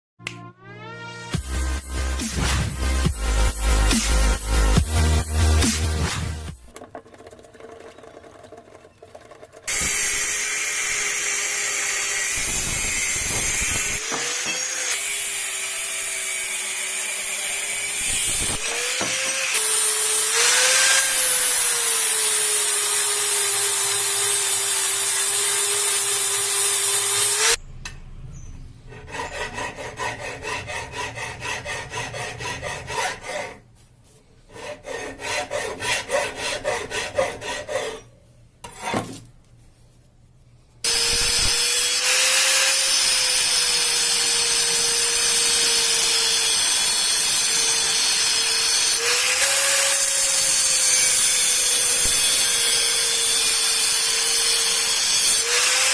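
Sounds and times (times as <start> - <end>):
angle grinder grinding steel: 2.2 - 27.6, 40.9 - 55.9.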